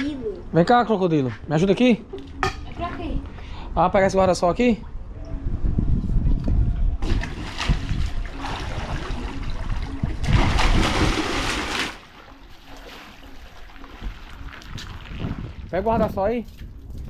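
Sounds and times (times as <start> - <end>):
pool water splashing: 7.0 - 15.3.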